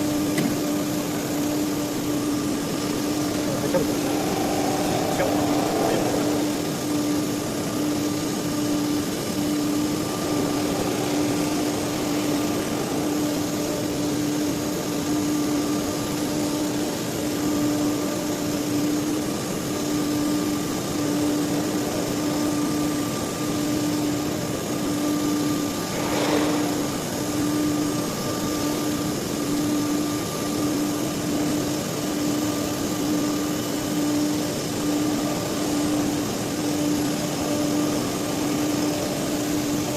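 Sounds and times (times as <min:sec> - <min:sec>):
router machine humming: 0:02.5 - 0:16.3
brief rising sound: 0:03.7 - 0:07.5, 0:25.7 - 0:28.3.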